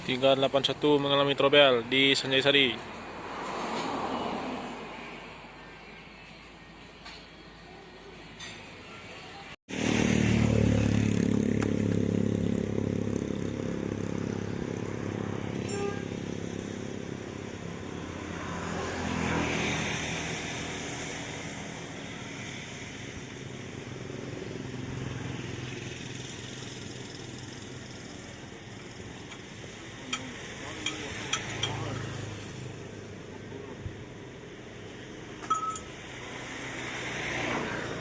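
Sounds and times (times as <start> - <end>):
vehicle engine humming: 9.3 - 38.0.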